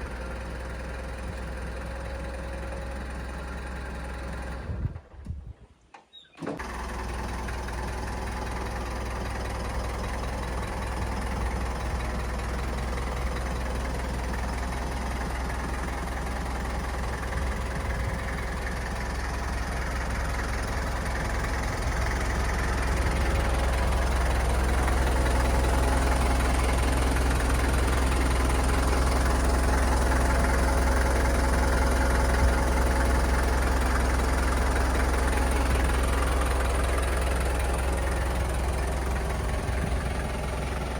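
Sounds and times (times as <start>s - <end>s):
forklift diesel engine running: 0.0s - 5.1s, 6.4s - 40.9s.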